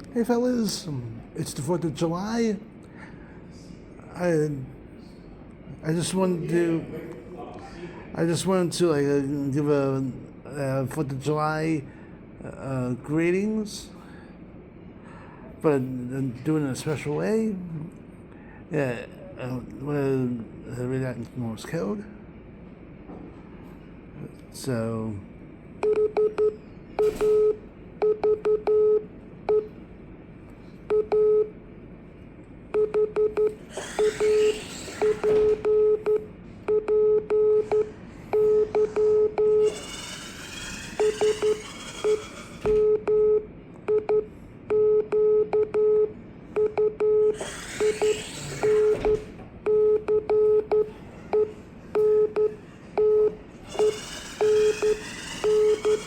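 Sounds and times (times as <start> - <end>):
morse code tone: 25.8 - 29.7, 30.9 - 31.5, 32.8 - 56.0.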